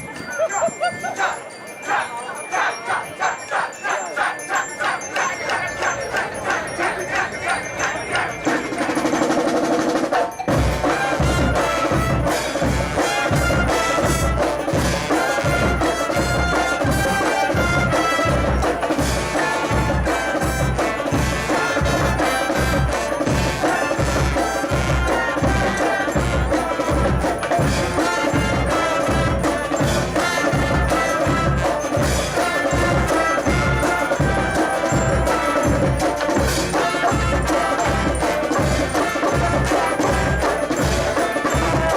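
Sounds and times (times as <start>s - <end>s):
brass band playing: 6.5s - 41.9s.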